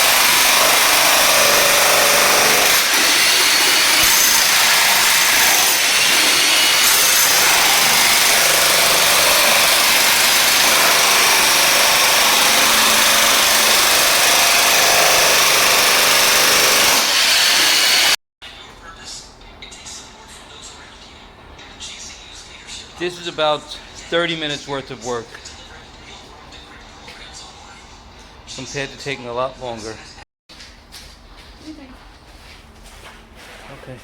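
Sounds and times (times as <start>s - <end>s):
jackhammer chiselling flooring: 0.0s - 18.2s.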